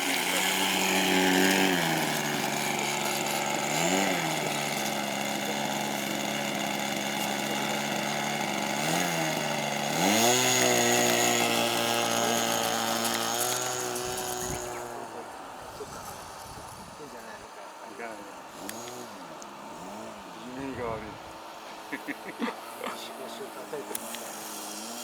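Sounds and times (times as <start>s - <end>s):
model airplane engine running: 0.0s - 25.0s.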